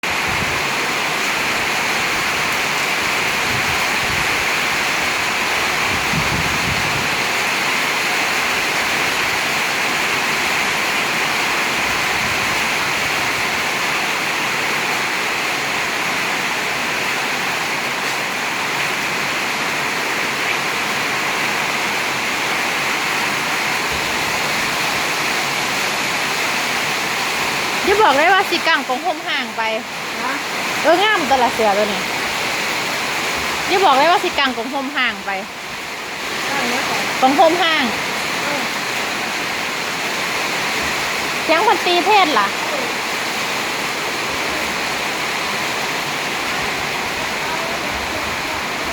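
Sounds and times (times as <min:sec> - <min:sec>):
heavy rain pouring: 0:00.0 - 0:48.9.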